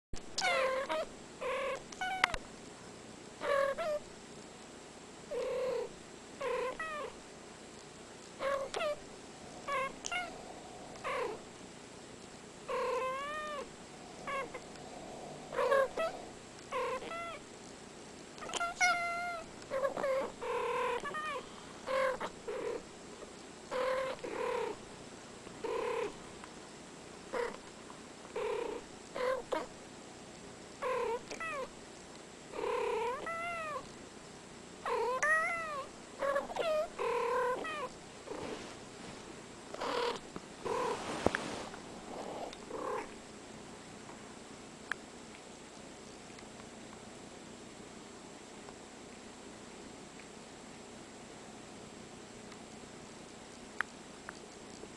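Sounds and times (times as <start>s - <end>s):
kittens meowing: 8.4s - 11.4s, 12.7s - 17.4s.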